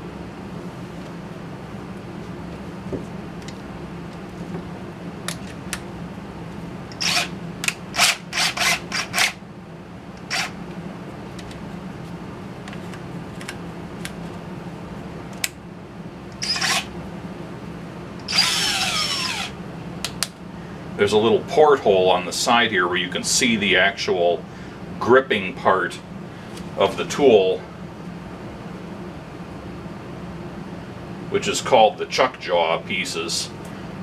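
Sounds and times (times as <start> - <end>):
steady low hum: 0.0 - 34.0
power drill spinning: 7.0 - 7.3, 8.0 - 9.4, 10.2 - 10.6, 16.4 - 16.9, 18.2 - 19.6.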